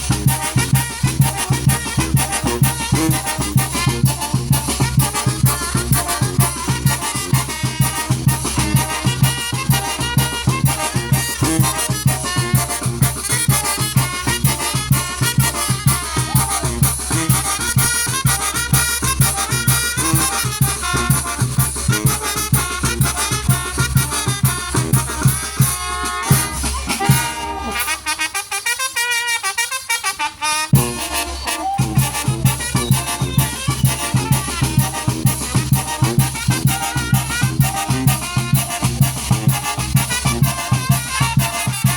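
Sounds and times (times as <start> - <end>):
driving drum beat: 0.0 - 29.2, 30.0 - 41.9
trumpets and brass playing: 0.0 - 41.9.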